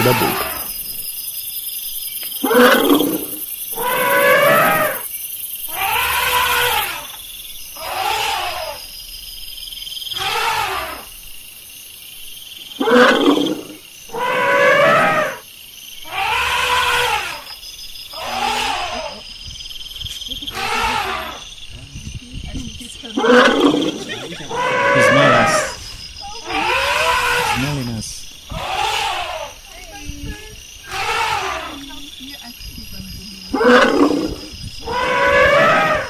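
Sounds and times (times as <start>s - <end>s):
elephant calling: 0.0s - 0.8s, 2.4s - 5.0s, 5.7s - 7.1s, 7.8s - 8.8s, 10.1s - 11.1s, 12.8s - 15.4s, 16.0s - 17.5s, 18.1s - 19.4s, 20.0s - 30.2s, 30.8s - 32.6s, 33.4s - 36.0s.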